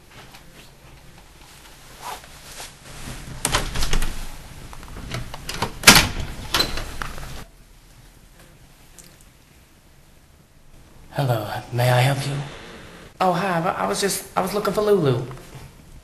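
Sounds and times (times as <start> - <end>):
low rumble: 10.8 - 13.2.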